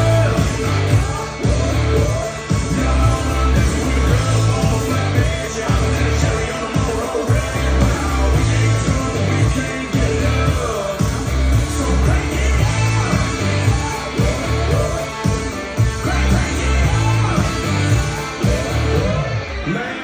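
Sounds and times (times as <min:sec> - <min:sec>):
rock music with singing: 0:00.0 - 0:20.0.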